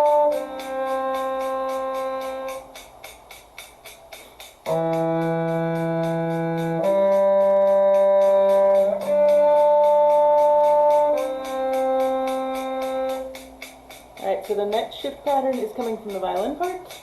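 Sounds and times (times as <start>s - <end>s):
cello playing long notes: 0.0s - 2.8s, 4.7s - 13.6s
faint regular ticking: 0.1s - 17.0s.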